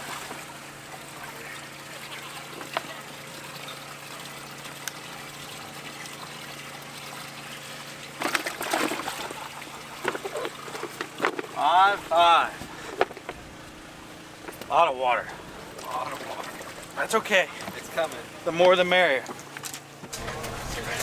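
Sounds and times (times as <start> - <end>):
water trickling: 0.0 - 12.9
water splashing: 0.0 - 18.4.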